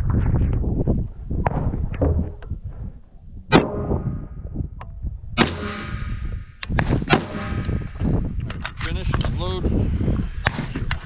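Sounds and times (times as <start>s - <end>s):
rifle shots: 3.5s - 4.2s, 5.4s - 8.2s
steel target ringing: 3.5s - 4.4s, 5.4s - 8.3s.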